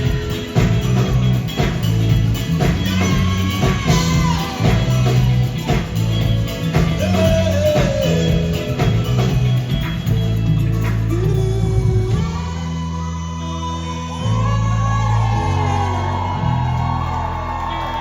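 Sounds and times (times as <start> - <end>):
singing voice: 0.0 - 10.2, 11.0 - 16.8
drums and percussion: 0.0 - 12.7
bass line: 0.0 - 18.0
guitar: 0.0 - 18.0.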